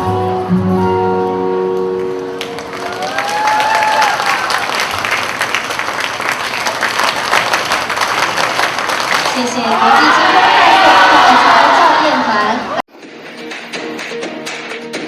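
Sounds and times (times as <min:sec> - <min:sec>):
audience applause: 0:02.1 - 0:12.2.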